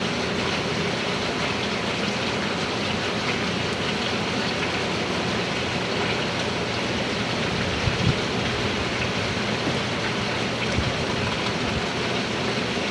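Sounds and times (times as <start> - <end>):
heavy rain: 0.1 - 12.9
hurricane wind: 7.2 - 12.2.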